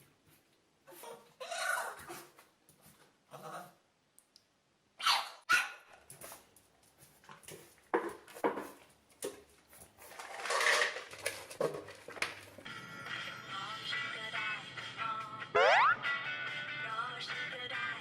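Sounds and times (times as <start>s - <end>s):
dog barking: 5.0s - 5.9s.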